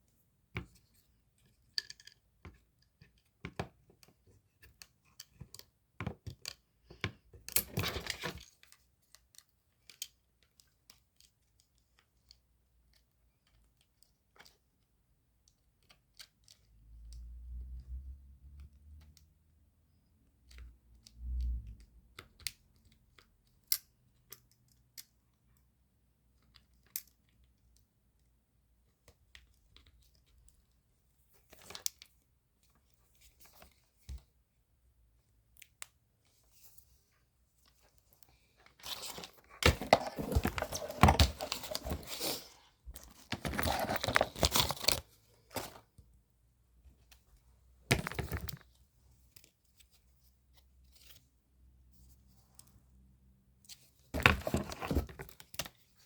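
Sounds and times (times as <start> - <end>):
hands tapping phone and objects: 37.7 - 46.1, 47.0 - 48.8.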